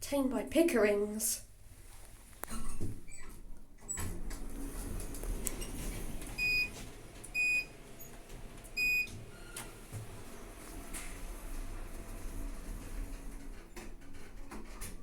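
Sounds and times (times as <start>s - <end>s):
lift high beeps: 6.4s - 6.8s, 7.4s - 7.7s, 8.8s - 9.1s.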